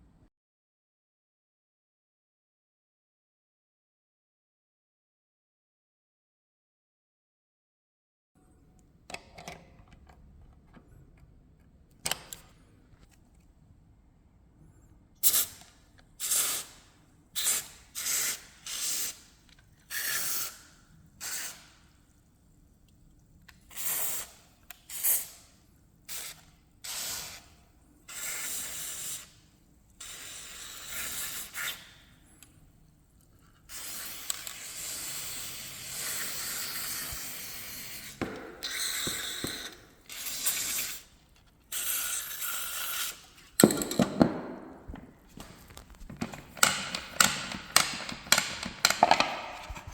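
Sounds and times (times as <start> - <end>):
aerosol spray hissing: 15.2 - 21.8, 26.1 - 29.4, 30.0 - 32.0, 33.7 - 43.4.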